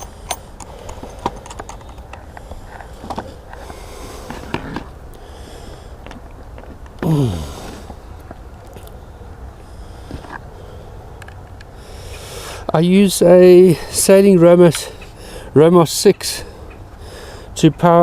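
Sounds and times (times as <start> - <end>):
radio gear clicks and knocks: 0.0 - 3.3.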